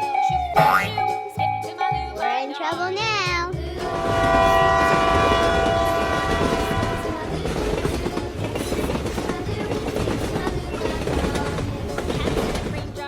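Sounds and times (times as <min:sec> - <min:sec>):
passing train rumble and clatter: 0:03.6 - 0:13.0
train horn chord: 0:03.8 - 0:07.3.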